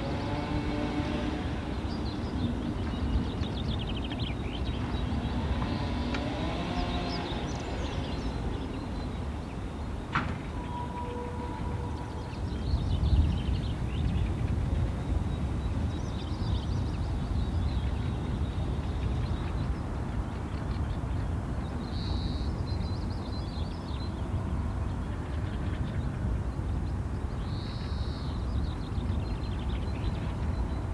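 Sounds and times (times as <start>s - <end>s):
birds chirping and trilling: 0.2s - 24.3s.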